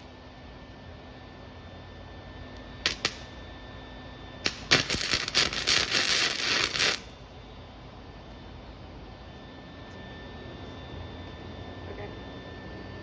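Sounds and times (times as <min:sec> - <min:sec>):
welding arc crackling: 0:02.8 - 0:03.4, 0:04.4 - 0:07.1.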